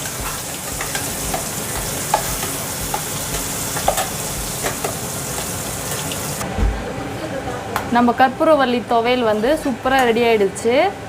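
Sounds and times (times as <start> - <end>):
hot oil sizzling: 0.0 - 6.4.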